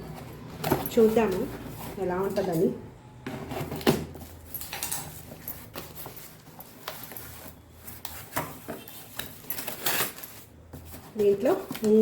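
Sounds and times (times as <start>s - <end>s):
cardboard box rustling and scraping: 5.1s - 12.0s.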